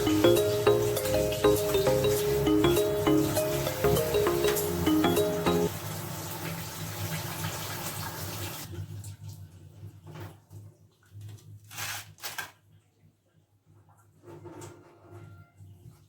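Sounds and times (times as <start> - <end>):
water running from a tap: 0.0 - 8.7.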